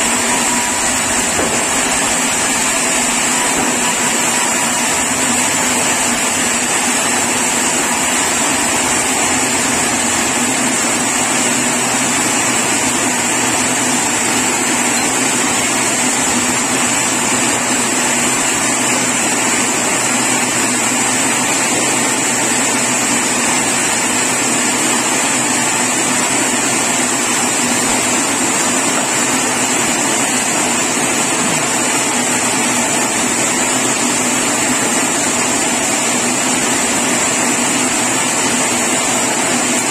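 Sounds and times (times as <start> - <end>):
sawmill machinery whining: 0.0 - 39.9.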